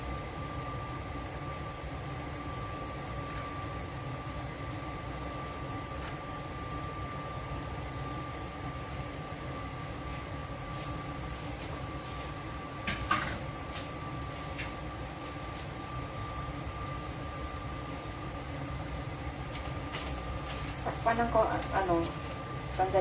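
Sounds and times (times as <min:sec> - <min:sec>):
faint high whine: 0:00.0 - 0:23.0
steady background hum: 0:00.0 - 0:23.0.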